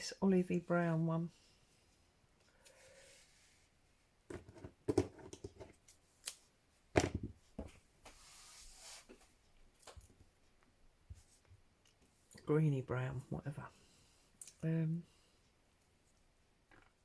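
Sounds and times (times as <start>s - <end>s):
clicks and taps of handled objects: 4.3s - 5.9s.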